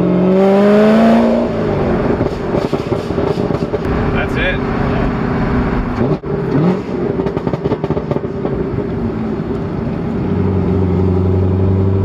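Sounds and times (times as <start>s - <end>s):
car engine revving: 0.0s - 12.0s
engine droning: 0.7s - 12.0s
exhaust pops and crackles: 2.0s - 5.0s.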